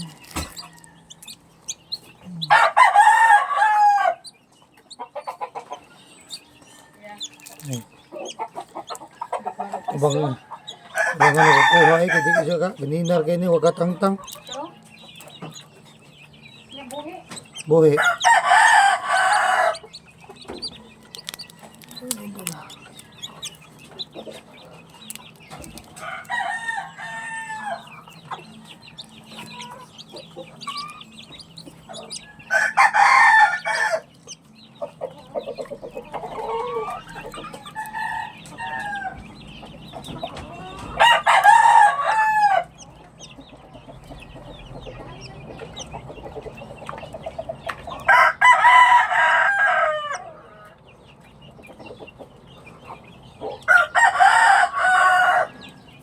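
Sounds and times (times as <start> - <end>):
hens clucking: 0.0 - 56.0
rooster crowing: 2.4 - 4.3, 9.7 - 12.7, 18.0 - 19.8, 26.0 - 28.0, 32.5 - 34.1, 37.8 - 39.2, 40.6 - 42.7, 48.1 - 50.7, 53.7 - 55.7.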